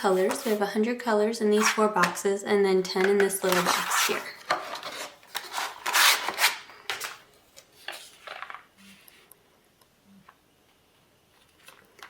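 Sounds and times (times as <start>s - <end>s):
boxes rustling: 3.0s - 7.2s.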